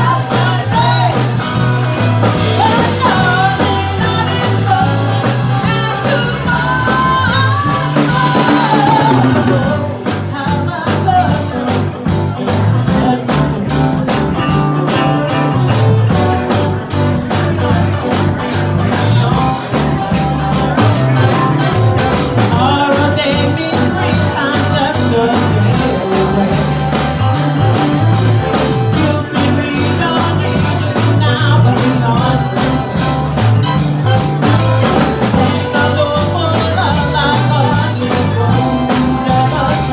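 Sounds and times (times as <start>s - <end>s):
drum kit beat: 0.0s - 39.9s
guitar: 0.0s - 39.9s
person singing: 0.0s - 39.9s.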